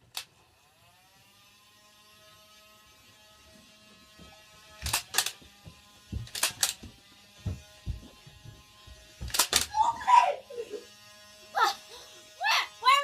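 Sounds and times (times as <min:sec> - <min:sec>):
small electric motor whining: 0:00.1 - 0:13.0
sharp snaps: 0:04.8 - 0:05.4, 0:06.2 - 0:06.8, 0:09.3 - 0:09.8.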